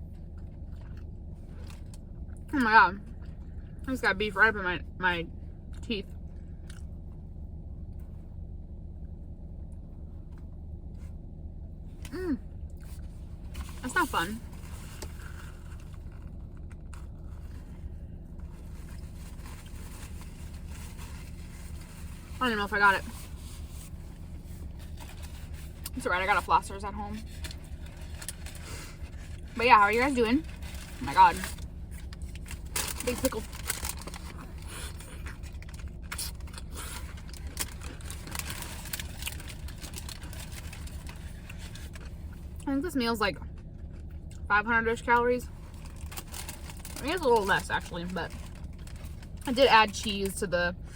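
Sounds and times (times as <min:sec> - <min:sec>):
crunchy chewing of a pickle: 0:00.0 - 0:03.9, 0:05.6 - 0:08.2, 0:14.4 - 0:22.4, 0:27.2 - 0:29.6, 0:30.3 - 0:42.7, 0:43.4 - 0:44.5
car engine idling: 0:00.0 - 0:50.9.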